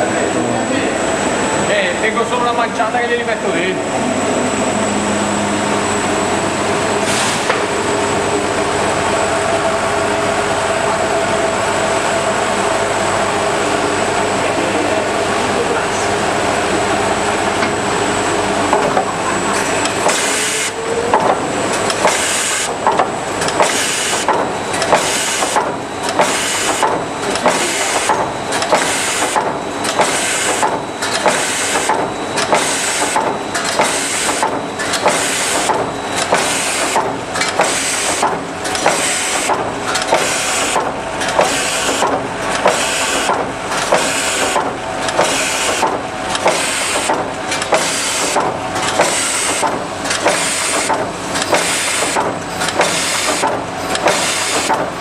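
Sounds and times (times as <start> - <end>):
machine hissing rush: 3.3 - 22.8
machine knocking: 16.6 - 55.0.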